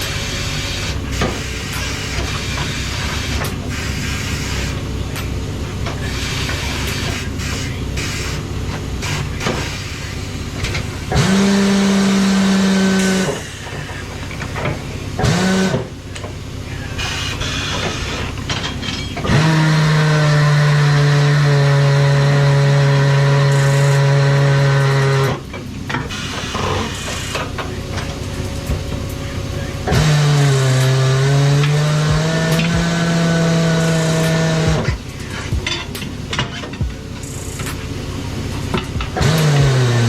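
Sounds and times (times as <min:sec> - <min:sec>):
air hiss: 0:00.0 - 0:05.0, 0:06.0 - 0:15.9
motor humming: 0:00.0 - 0:40.0.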